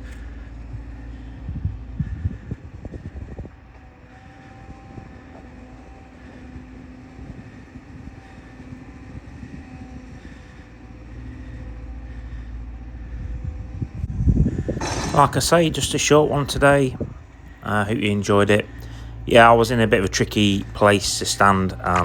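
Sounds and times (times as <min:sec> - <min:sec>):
excavator diesel engine running: 0:00.0 - 0:22.0.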